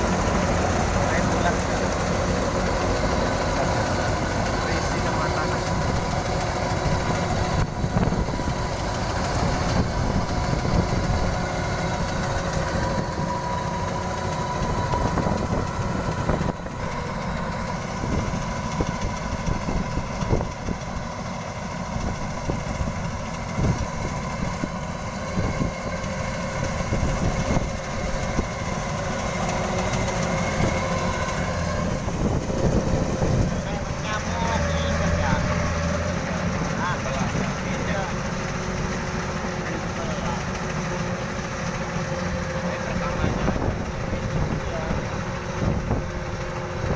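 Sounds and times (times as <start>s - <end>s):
diesel engine rumbling: 0.0s - 46.9s
thin steady whine: 0.0s - 46.9s.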